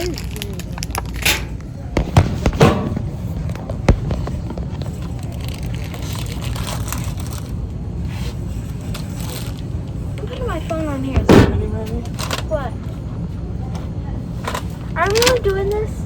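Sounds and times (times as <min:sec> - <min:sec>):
sharp knocks: 0:02.0 - 0:04.7, 0:11.2 - 0:11.9.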